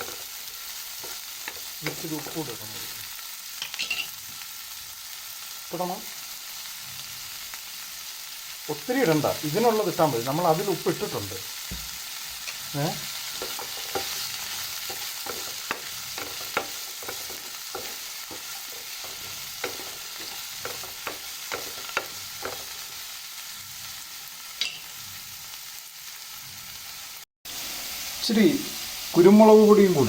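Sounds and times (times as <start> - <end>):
vegetables sizzling in oil: 0.0 - 30.0
utensil scraping a pan: 13.3 - 22.7.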